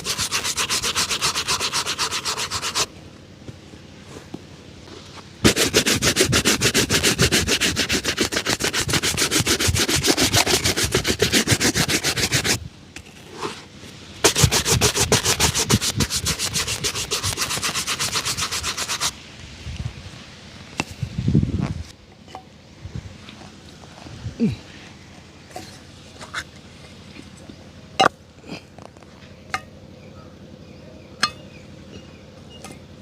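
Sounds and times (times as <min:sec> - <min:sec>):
shoe being rubbed: 0:00.0 - 0:02.9, 0:04.9 - 0:12.6, 0:13.2 - 0:19.1.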